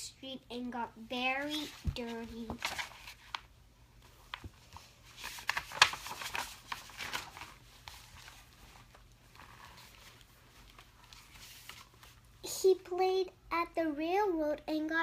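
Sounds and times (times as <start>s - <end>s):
paper page turning: 1.4s - 3.5s, 4.1s - 12.2s.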